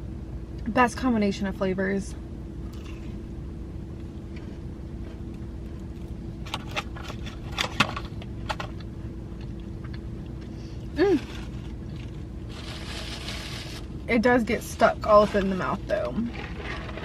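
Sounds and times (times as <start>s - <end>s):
steady low hum: 0.0s - 17.0s
person chewing: 2.6s - 3.3s, 4.0s - 7.5s, 8.7s - 13.7s.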